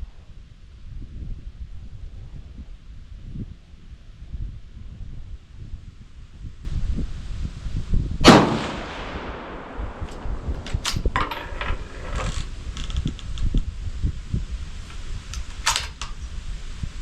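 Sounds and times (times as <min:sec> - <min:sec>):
wind rumble on microphone: 0:00.0 - 0:17.0
rifle shot with echo: 0:08.2 - 0:11.2
sharp clicks and rattles: 0:10.0 - 0:13.7, 0:14.9 - 0:16.2.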